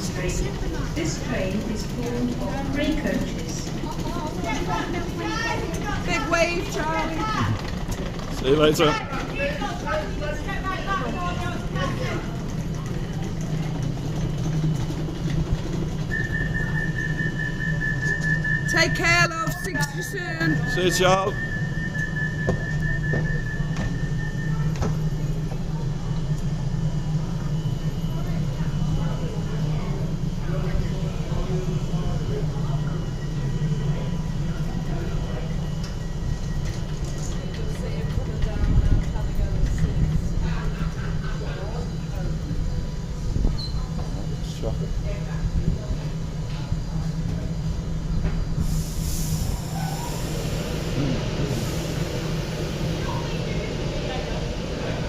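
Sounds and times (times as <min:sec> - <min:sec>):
train low hum: 0:00.0 - 0:55.0
hissing rush: 0:48.6 - 0:55.0.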